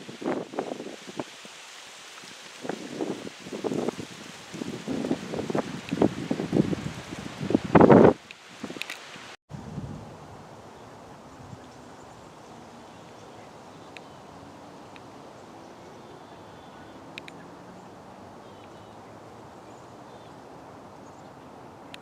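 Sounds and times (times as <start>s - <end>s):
outdoor background noise: 0.0s - 22.0s
faint sharp clicks: 8.2s - 9.3s, 17.1s - 17.4s.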